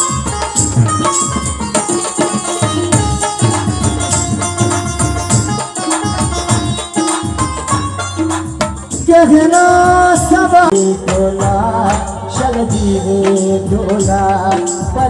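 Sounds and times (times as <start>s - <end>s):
held instrumental melody: 0.0s - 15.0s
steady drum beat: 0.0s - 15.0s.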